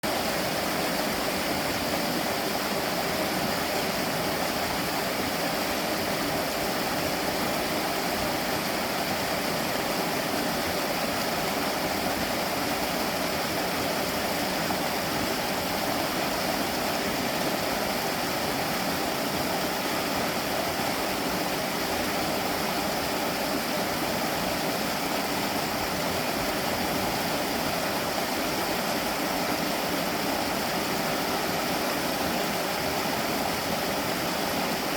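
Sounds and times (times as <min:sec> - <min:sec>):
stream flowing: 0:00.0 - 0:34.9.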